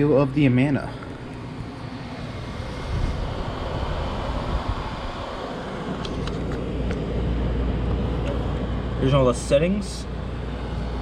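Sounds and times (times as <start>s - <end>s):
air conditioner fan rushing: 0.0s - 11.0s.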